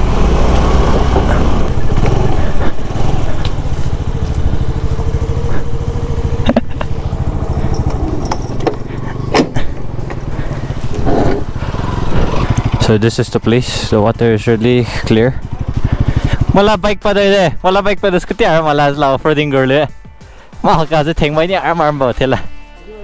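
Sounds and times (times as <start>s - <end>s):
scooter engine running: 0.0s - 13.6s, 15.0s - 16.7s
wind and road noise: 0.0s - 19.2s.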